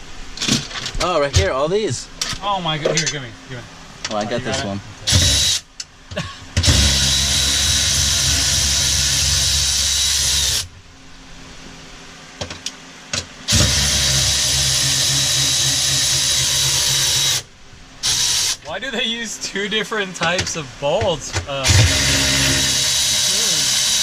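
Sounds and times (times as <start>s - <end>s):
power drill running: 5.1s - 5.6s, 6.6s - 10.7s, 13.5s - 18.6s, 21.6s - 24.0s.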